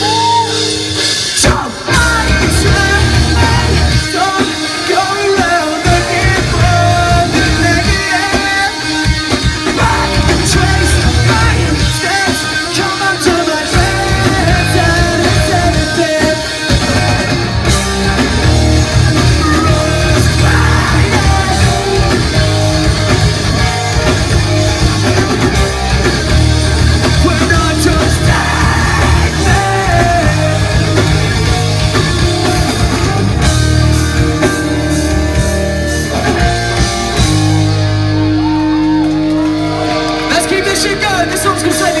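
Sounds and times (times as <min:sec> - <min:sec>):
sung and shouted vocals: 0:00.0 - 0:17.5, 0:19.1 - 0:23.1, 0:27.0 - 0:31.8
bass guitar: 0:00.0 - 0:42.0
drums: 0:00.0 - 0:42.0
electric guitars: 0:00.0 - 0:42.0.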